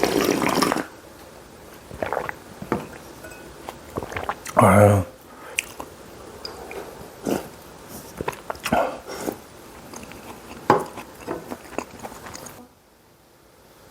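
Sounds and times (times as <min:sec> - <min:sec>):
wet mouth clicks: 0:02.0 - 0:02.4, 0:03.7 - 0:04.6, 0:05.5 - 0:12.6
lip smacking: 0:03.6 - 0:04.7, 0:05.5 - 0:12.6
chewing and biting: 0:06.7 - 0:12.6.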